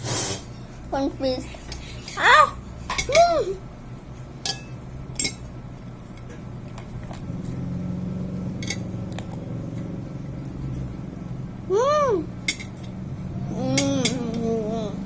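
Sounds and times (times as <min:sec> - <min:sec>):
low steady hum: 0:00.5 - 0:15.0
cutlery clinking against dishes: 0:04.4 - 0:05.5, 0:08.6 - 0:08.9, 0:12.5 - 0:13.0
person saying ah: 0:11.7 - 0:12.3.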